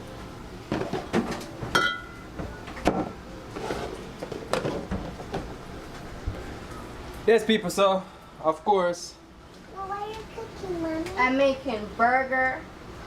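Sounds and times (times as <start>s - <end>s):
cookware and utensils clattering: 0.7s - 2.2s, 2.8s - 5.4s.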